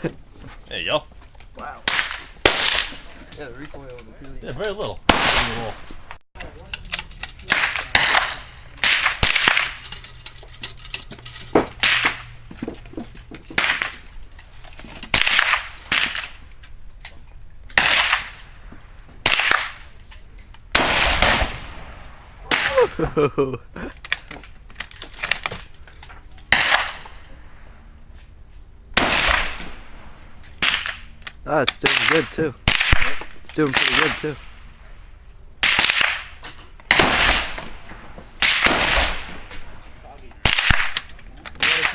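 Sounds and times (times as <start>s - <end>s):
rifle gunshots with echo: 1.8s - 3.0s, 5.1s - 6.0s, 7.5s - 9.8s, 20.7s - 22.9s, 29.0s - 31.1s, 31.8s - 34.6s, 35.6s - 39.8s, 40.4s - 41.9s.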